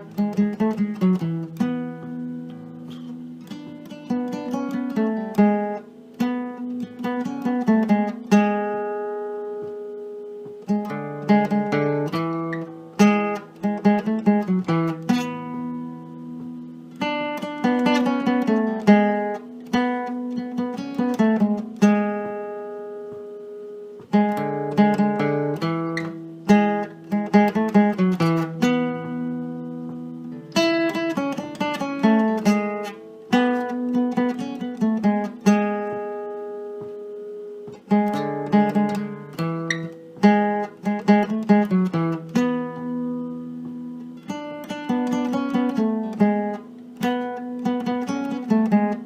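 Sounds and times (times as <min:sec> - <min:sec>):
plucked acoustic string instrument: 0:00.0 - 0:49.0.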